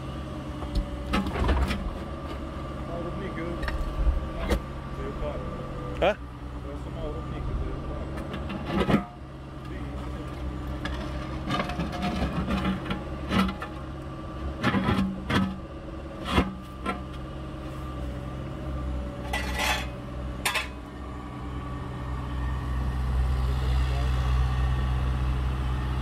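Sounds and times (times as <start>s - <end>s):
excavator engine running: 0.0s - 26.0s
bucket clanking and scraping: 8.2s - 9.2s, 10.8s - 13.8s, 14.6s - 15.6s, 19.2s - 20.8s.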